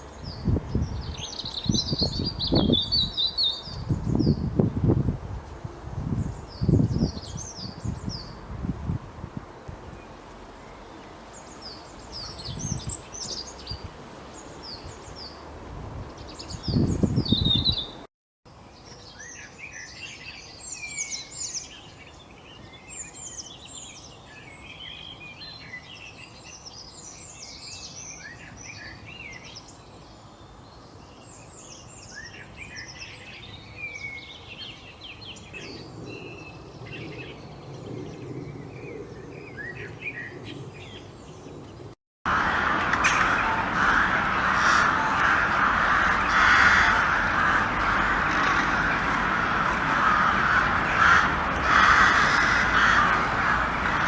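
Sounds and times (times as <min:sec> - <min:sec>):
low rumbles: 0:42.3 - 0:54.0.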